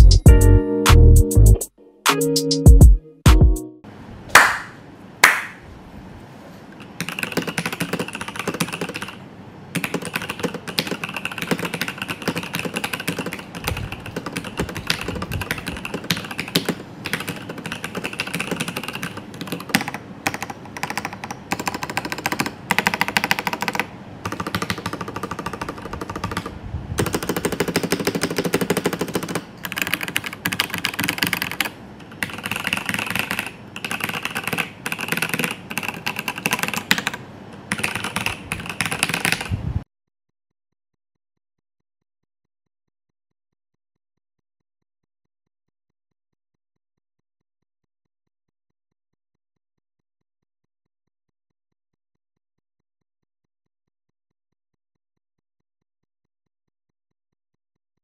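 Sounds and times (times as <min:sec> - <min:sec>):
mechanical keyboard typing: 0:06.8 - 0:39.6.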